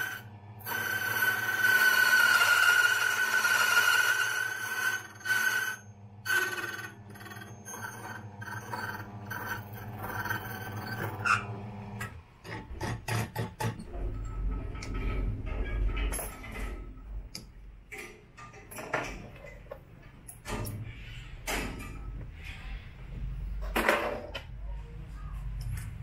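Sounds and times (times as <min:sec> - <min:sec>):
cutter scraping key with ringing tone: 0:04.9 - 0:11.4.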